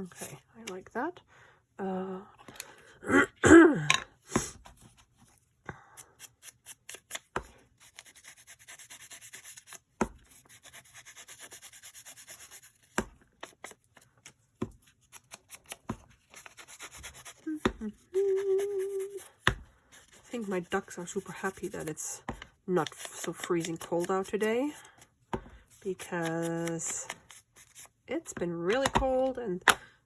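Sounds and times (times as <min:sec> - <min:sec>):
woman clearing throat: 0:03.0 - 0:04.1
scratchy rubbing of paper: 0:07.8 - 0:12.9, 0:15.2 - 0:22.1.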